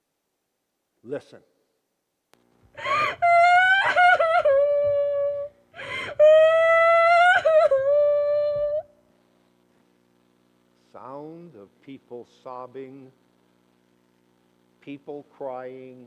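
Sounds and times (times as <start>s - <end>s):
person crying wails: 2.8s - 8.9s.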